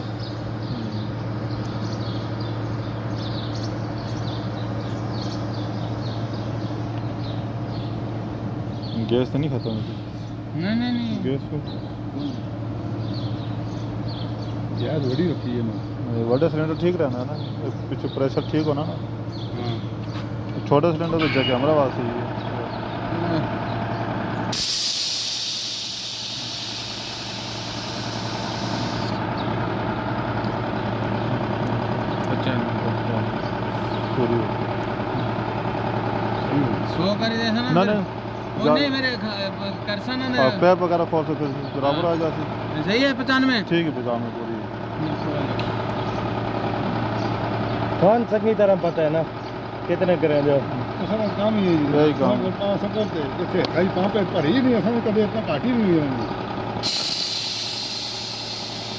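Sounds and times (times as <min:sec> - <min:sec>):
machinery low hum: 0:00.0 - 0:38.6
engine running: 0:00.0 - 0:58.9
short high chirps: 0:21.2 - 0:22.0
gas hissing from valve: 0:24.5 - 0:29.2, 0:56.8 - 0:58.9.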